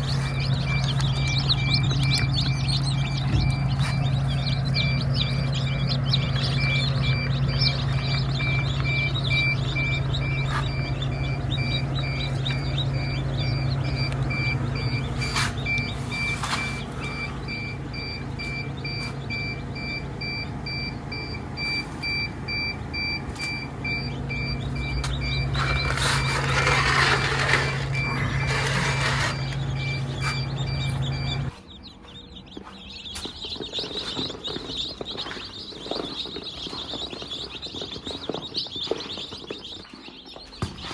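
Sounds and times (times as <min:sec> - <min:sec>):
high electronic beeps: 0:00.0 - 0:31.6
low machine hum: 0:00.0 - 0:40.9.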